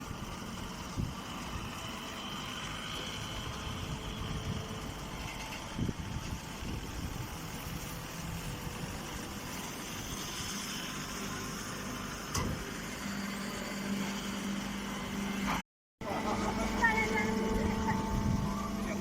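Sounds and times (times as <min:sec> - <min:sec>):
baling machine running: 0:00.0 - 0:19.0
steady hum: 0:13.5 - 0:19.0.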